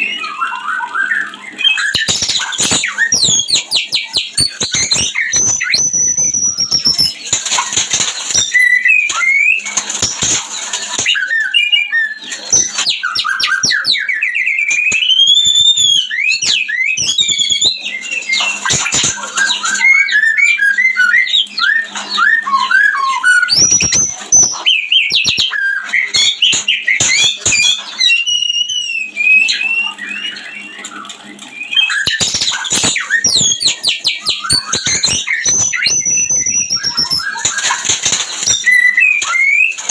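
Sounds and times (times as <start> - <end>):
songbird whistles and trills: 0.0 - 39.9
sharp clicks: 1.8 - 11.2, 32.0 - 39.9.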